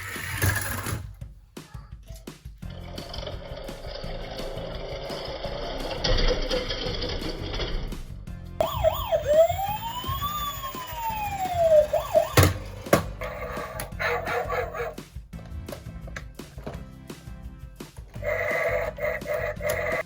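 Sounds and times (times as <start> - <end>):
police siren wailing: 8.6 - 12.6.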